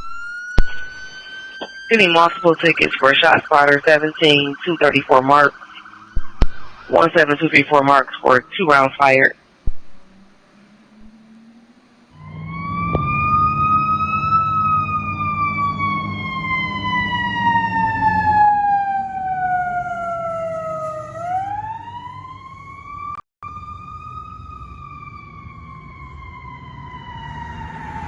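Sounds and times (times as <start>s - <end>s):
emergency siren wailing: 0.0s - 28.0s
low rumble: 9.6s - 28.0s.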